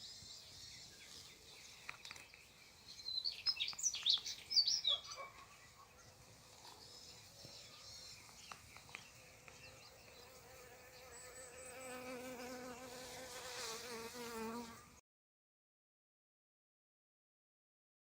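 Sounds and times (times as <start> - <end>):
faint bird chirps: 0.0 - 12.2
flying insect buzzing: 9.4 - 15.0.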